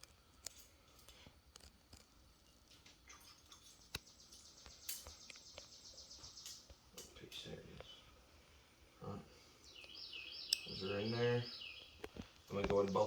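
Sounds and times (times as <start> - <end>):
faint metal clicks and taps: 9.8 - 10.7.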